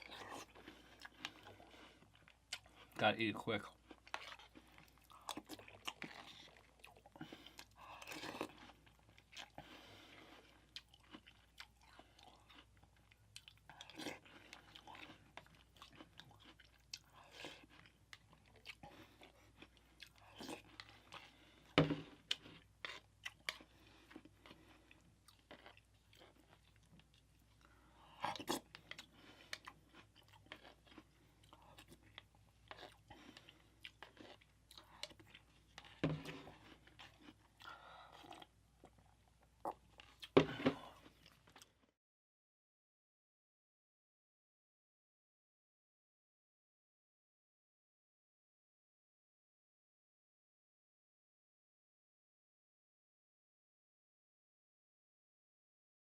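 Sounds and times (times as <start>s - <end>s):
chewing and crunching wafers: 0.0s - 41.9s.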